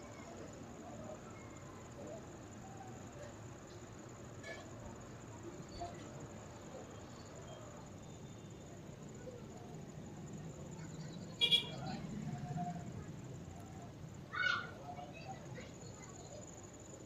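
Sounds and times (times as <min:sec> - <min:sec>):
low background noise: 0:00.0 - 0:17.0.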